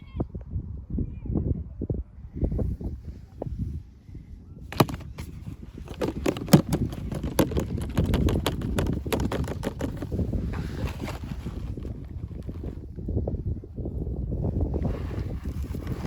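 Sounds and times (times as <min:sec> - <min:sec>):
plastic and cardboard packaging handled: 0:04.7 - 0:12.8, 0:14.8 - 0:16.0.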